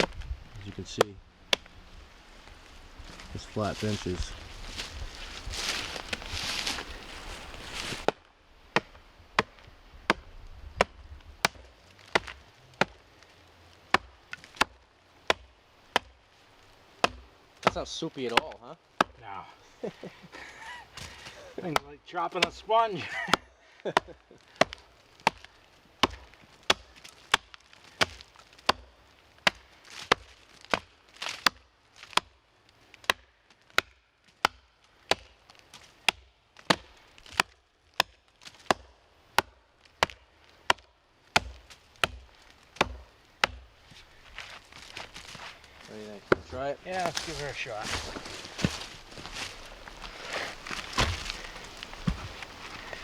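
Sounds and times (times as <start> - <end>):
footsteps on forest floor: 0.0 - 8.2, 19.9 - 21.8, 41.4 - 53.0
axe chopping into log: 8.8 - 13.0, 13.9 - 16.2, 17.0 - 19.2, 21.0 - 22.6, 23.3 - 32.3, 33.0 - 35.3, 36.0 - 45.5, 46.2 - 53.0
heavy wooden thud: 50.1 - 53.0.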